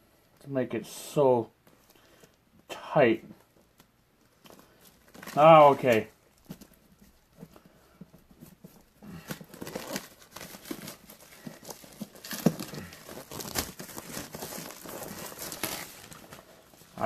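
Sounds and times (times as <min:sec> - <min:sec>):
plastic shrink-wrap tearing: 0:09.1 - 0:17.0.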